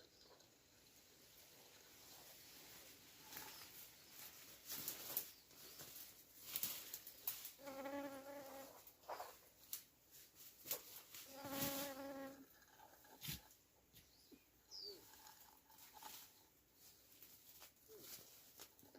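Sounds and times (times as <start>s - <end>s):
flying insect buzzing: 7.5s - 9.2s, 11.2s - 13.1s.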